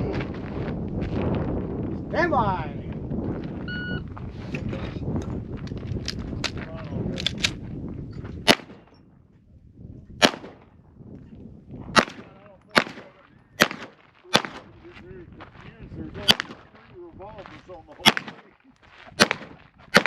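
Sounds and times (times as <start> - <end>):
pistol shots: 8.4 - 8.9, 10.2 - 10.7, 11.9 - 14.8, 16.2 - 16.6, 18.0 - 18.5, 19.2 - 20.0.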